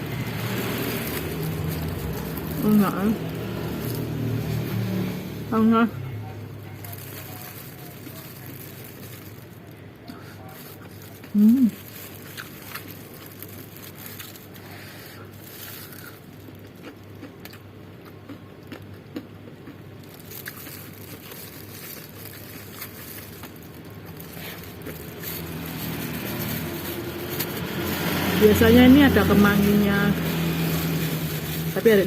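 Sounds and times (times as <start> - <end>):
person eating and chewing: 0.0 - 4.6, 6.8 - 28.4
vehicle engine: 0.0 - 10.0, 19.8 - 32.0
low background hum: 0.0 - 32.0.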